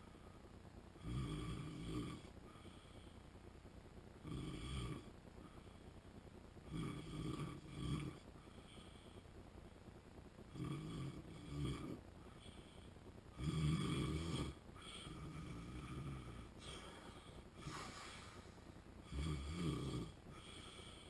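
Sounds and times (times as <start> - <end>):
man snoring: 1.0 - 2.3, 4.2 - 5.1, 6.7 - 8.3, 10.5 - 12.6, 13.4 - 21.0
soft breathing: 2.2 - 4.1, 4.8 - 6.3, 7.9 - 10.3, 11.8 - 13.2, 14.4 - 21.0.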